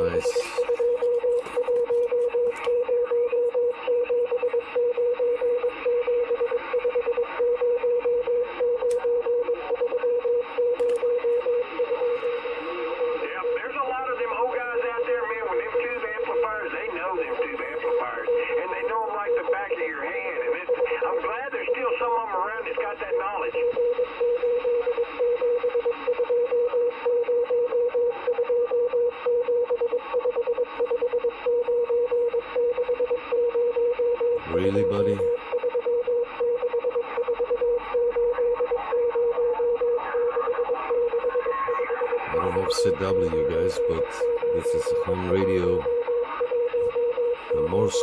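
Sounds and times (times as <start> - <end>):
radio receiver hiss: 0.0 - 3.6, 38.2 - 48.0
morse code tone: 0.0 - 48.0
radio static hiss: 0.0 - 48.0.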